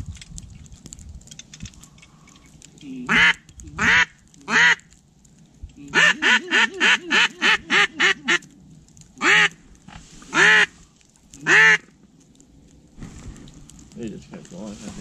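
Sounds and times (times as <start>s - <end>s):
duck call quacks: 3.1s - 4.8s, 5.9s - 8.4s, 9.2s - 9.5s, 10.3s - 10.7s, 11.4s - 11.8s.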